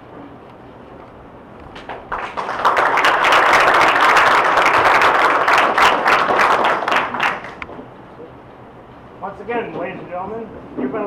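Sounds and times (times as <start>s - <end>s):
audience applauding: 2.1s - 7.6s.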